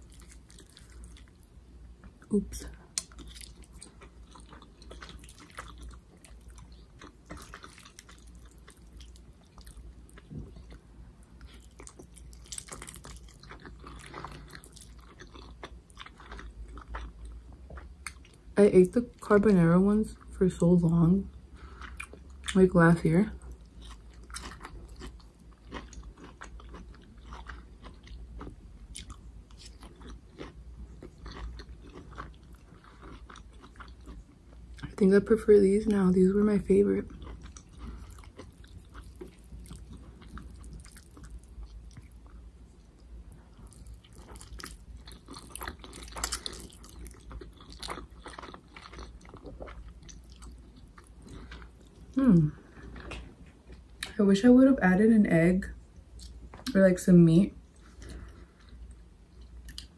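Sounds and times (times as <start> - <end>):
chewing noodles: 0.0 - 2.3, 3.0 - 18.4, 23.4 - 34.9, 37.0 - 54.1.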